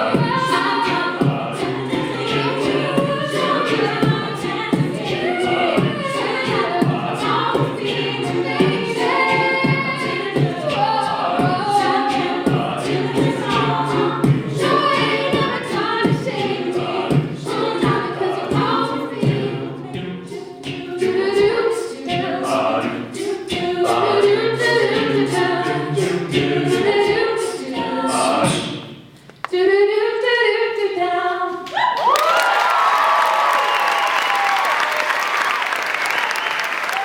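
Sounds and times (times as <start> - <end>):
vocal percussion beat: 0.0 - 29.2
a cappella group singing: 0.0 - 31.6.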